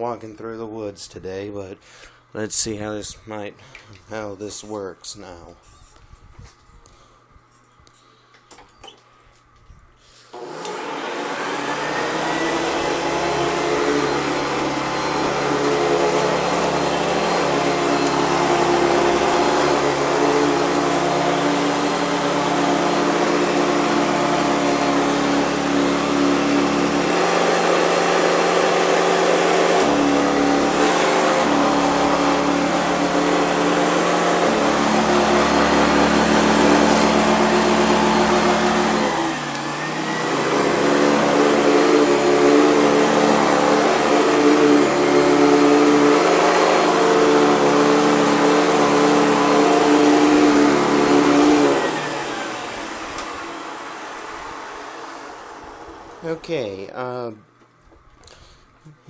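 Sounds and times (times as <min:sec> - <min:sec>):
vacuum cleaner motor running: 0:10.3 - 0:56.5.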